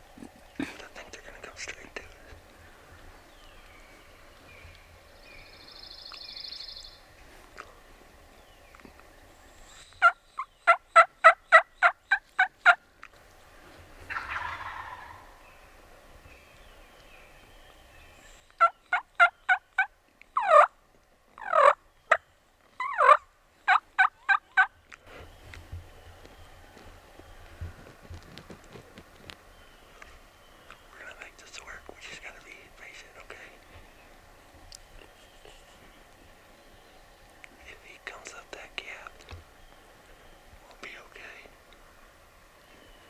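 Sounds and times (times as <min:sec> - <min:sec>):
turkey yelping: 0:14.0 - 0:15.8, 0:18.6 - 0:20.7, 0:21.4 - 0:21.8, 0:22.8 - 0:24.7.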